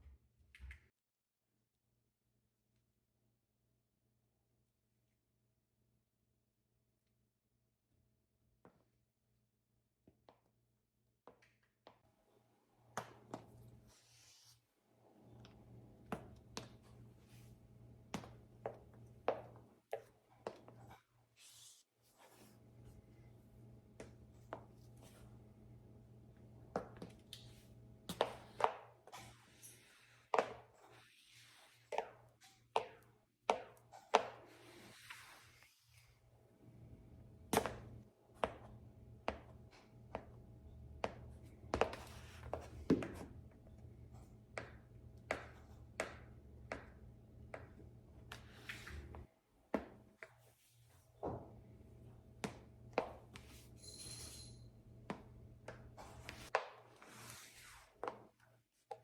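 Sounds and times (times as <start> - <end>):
shoes scuffing: 26.7 - 29.5, 41.0 - 43.4
high heel clicks on hard floor: 37.5 - 40.4, 41.0 - 43.4, 44.5 - 48.4.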